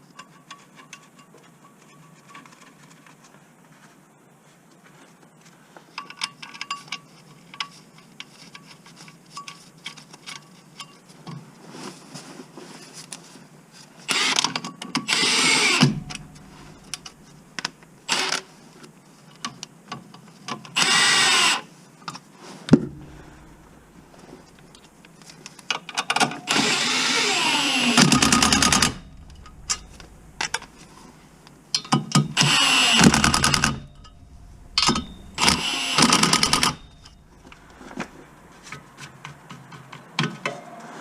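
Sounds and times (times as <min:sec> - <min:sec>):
cordless power tool whirring: 0:15.1 - 0:17.5, 0:26.5 - 0:30.8, 0:32.4 - 0:38.1.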